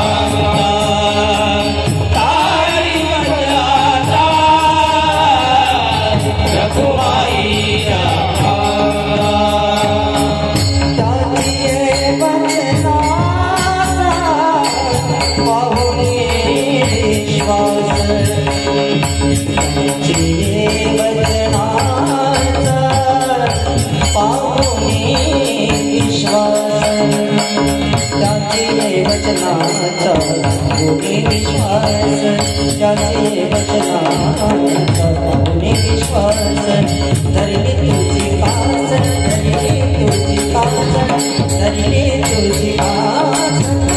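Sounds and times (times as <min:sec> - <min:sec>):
instrumental accompaniment: 0:00.0 - 0:43.9
man singing devotional song: 0:00.0 - 0:43.9
rhythmic percussion: 0:00.0 - 0:43.9.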